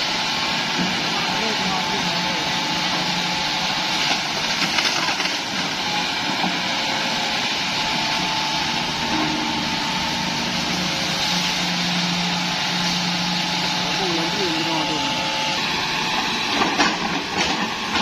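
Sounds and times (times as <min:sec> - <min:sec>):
excavator diesel engine running: 0:00.0 - 0:18.0.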